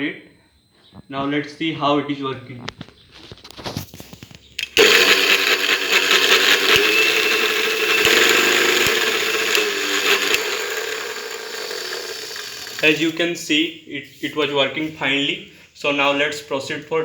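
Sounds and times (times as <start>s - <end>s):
mixer grinder motor whining: 4.6s - 13.2s.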